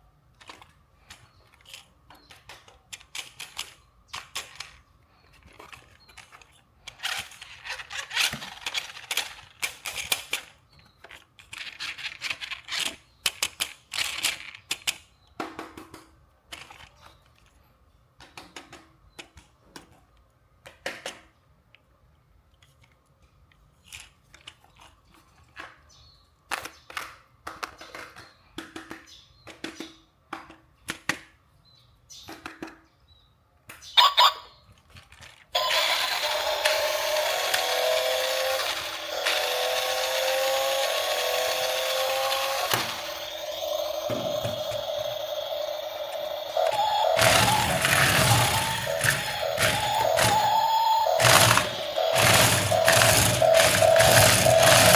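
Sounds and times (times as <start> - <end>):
clicks and taps on plastic: 26.6 - 31.3.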